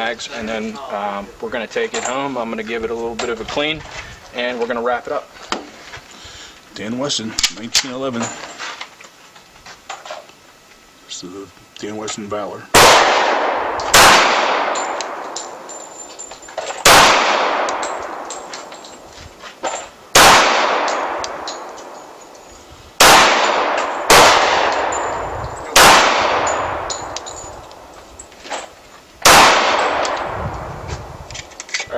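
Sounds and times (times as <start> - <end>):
pistol shots echoing: 12.8 - 15.9, 16.8 - 19.0, 20.1 - 22.3, 23.0 - 27.9, 29.2 - 30.4.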